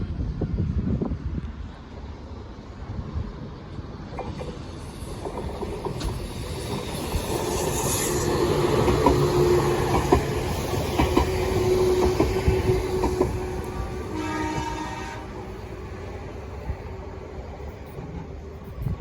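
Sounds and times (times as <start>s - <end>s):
electric train passing: 0.0s - 19.0s
wheels clacking over rail joints: 4.0s - 15.9s.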